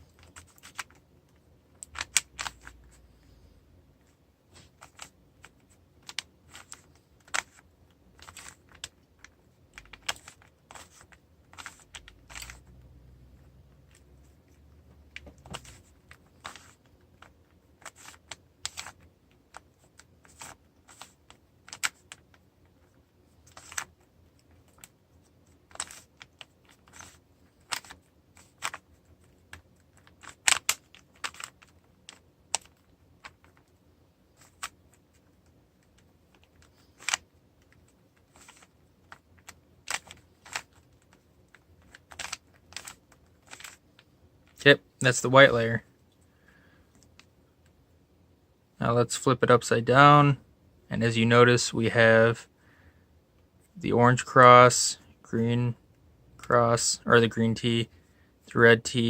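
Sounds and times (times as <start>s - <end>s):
puzzle cube layers clicking: 1.8s - 2.9s, 9.7s - 12.8s, 15.1s - 22.8s, 23.4s - 24.9s, 25.5s - 33.7s, 34.4s - 43.8s.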